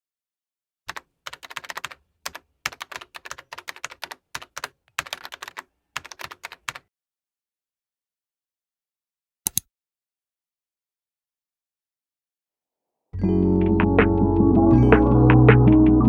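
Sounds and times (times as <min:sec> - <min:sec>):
rapid keyboard typing: 0:00.9 - 0:06.9.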